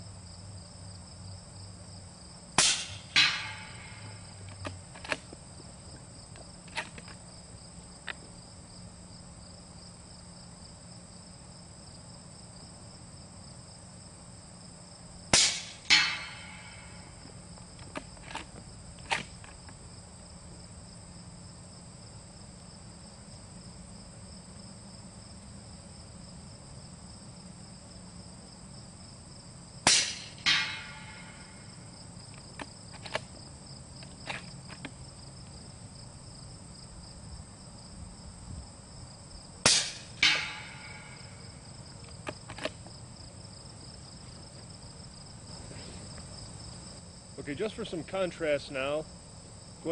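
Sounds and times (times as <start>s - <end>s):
insects chirping: 0.0s - 49.9s
suppressed rifle shots: 2.6s - 4.2s, 15.3s - 16.8s, 29.8s - 31.5s, 39.6s - 41.2s
ringing hit on steel target: 2.6s - 4.3s, 15.4s - 17.2s, 29.9s - 31.7s, 39.7s - 41.4s.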